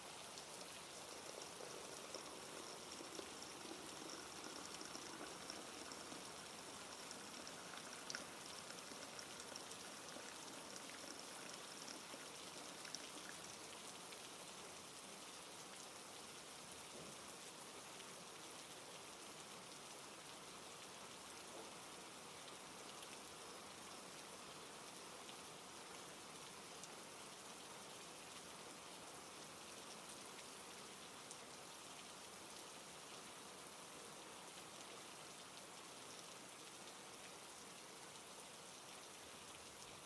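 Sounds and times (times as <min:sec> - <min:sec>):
steady rain hiss: 0:00.0 - 0:40.0
raindrops ticking: 0:00.3 - 0:13.7.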